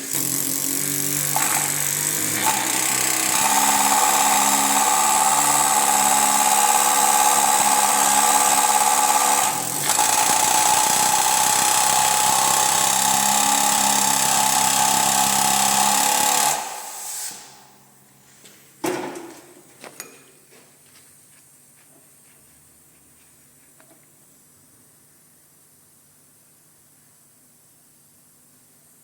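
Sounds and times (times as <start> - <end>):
power tool whining: 0.0 - 17.0.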